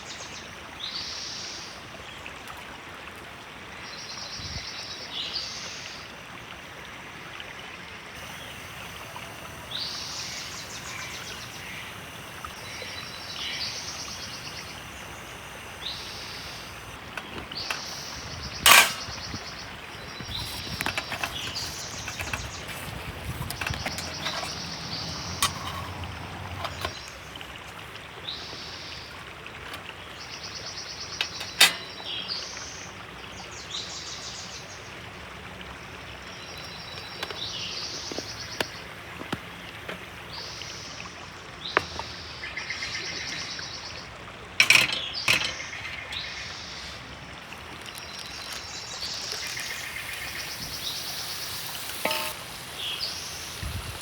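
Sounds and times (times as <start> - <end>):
sharp clicks: 8.2 - 27.2, 31.2 - 32.0
birds chirping: 8.2 - 33.0, 36.3 - 40.9, 44.6 - 54.0.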